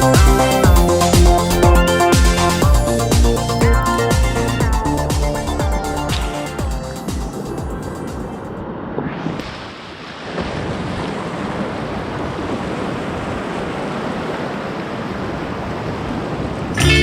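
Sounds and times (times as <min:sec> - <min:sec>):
river water rushing: 0:09.4 - 0:17.0.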